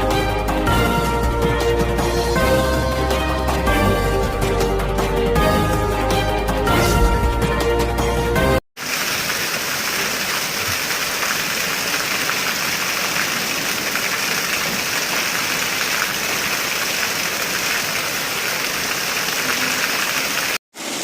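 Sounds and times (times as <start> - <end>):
heavy rain pouring: 8.8 - 21.0.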